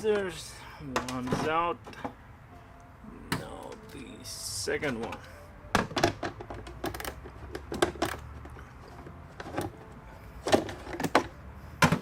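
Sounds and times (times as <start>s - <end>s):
hand tools clicking and knocking: 4.8s - 9.8s.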